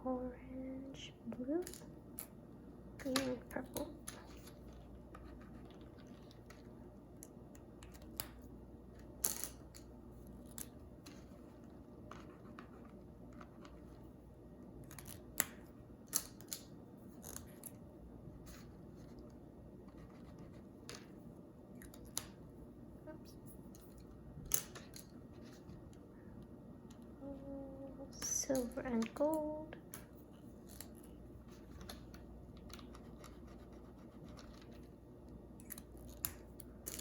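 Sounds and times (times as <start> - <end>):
low steady hum: 0.0 - 37.0.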